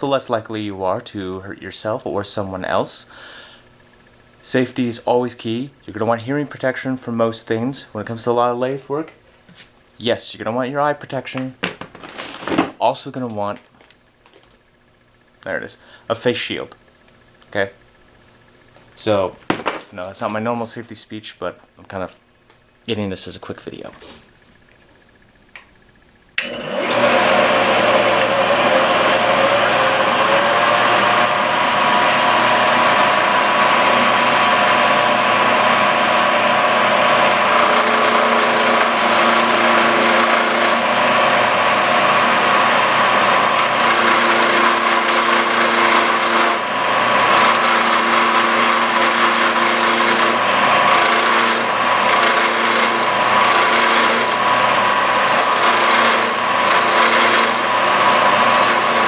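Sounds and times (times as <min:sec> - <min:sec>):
lathe running: 0:01.9 - 0:08.8, 0:26.4 - 0:59.0
cutter turning wood: 0:26.4 - 0:59.0.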